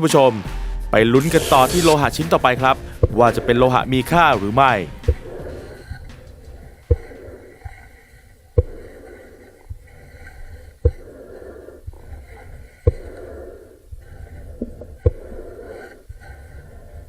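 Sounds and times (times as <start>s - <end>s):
heavy rhythmic breathing: 0.7s - 17.0s
sharp knock: 2.2s - 5.6s.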